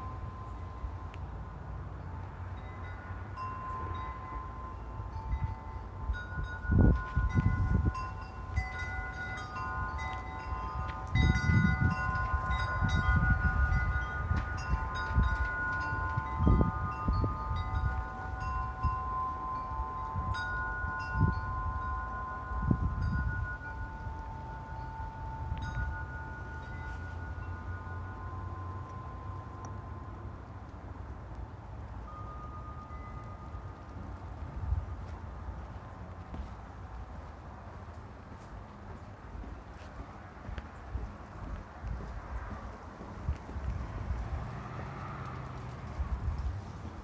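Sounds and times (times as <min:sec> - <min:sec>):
wind chimes ringing: 0:00.0 - 0:01.2, 0:02.0 - 0:30.4, 0:32.0 - 0:34.9
wind on microphone: 0:05.0 - 0:27.3, 0:39.4 - 0:47.0.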